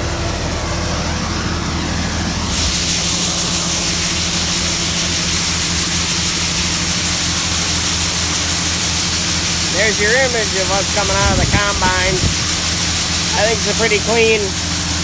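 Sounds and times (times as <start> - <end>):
combine engine drone: 0.0 - 15.0
rushing hiss of grain: 2.3 - 15.0.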